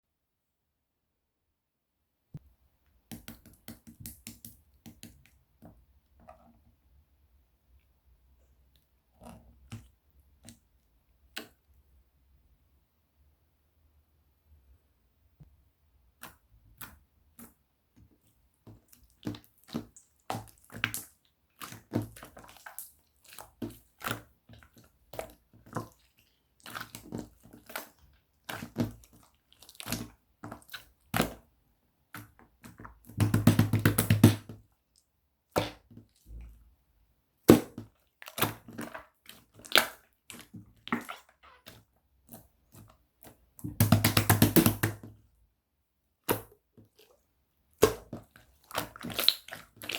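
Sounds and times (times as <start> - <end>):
slime squished by hand: 37.5 - 45.1, 46.2 - 49.9.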